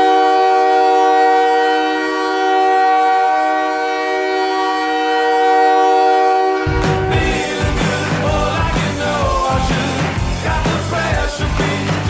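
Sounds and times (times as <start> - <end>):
loud goal horn blast: 0.0 - 7.8.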